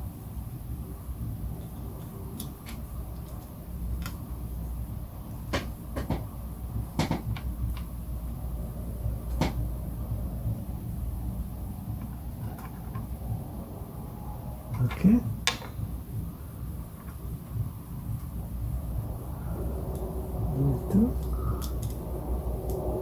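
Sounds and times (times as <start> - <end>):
steady low hum: 0.0 - 23.0
tools clicking and knocking: 5.5 - 6.3, 7.0 - 7.9, 12.0 - 13.2, 14.7 - 15.9.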